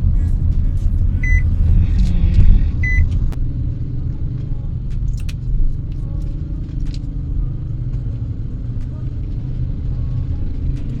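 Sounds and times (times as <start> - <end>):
car rumbling on road: 0.0 - 11.0
short high beep: 1.2 - 1.4, 2.8 - 3.0.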